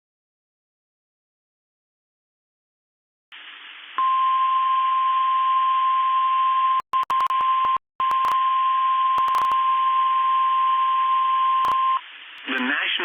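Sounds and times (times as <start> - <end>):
radio reception clicks: 6.9 - 8.4, 9.2 - 9.6, 11.6 - 11.8
radio hiss: 11.6 - 13.0.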